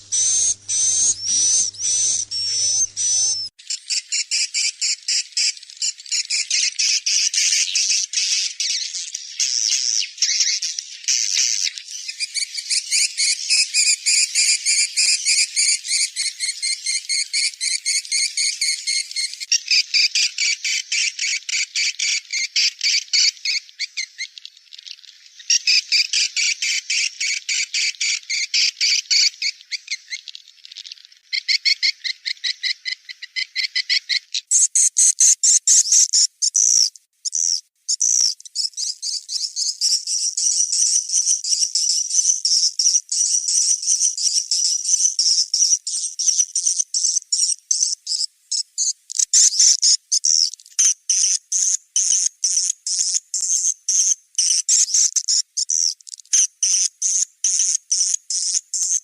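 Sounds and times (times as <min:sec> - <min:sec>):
swiftlets twittering: 0:00.0 - 0:03.5.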